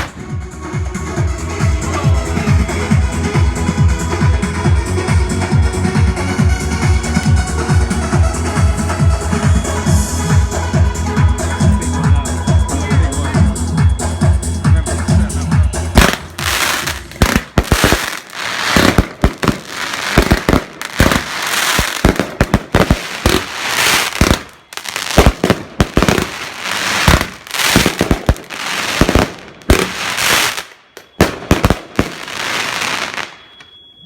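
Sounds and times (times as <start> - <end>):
fireworks bangs and crackles: 0.0 - 0.4, 16.0 - 33.6.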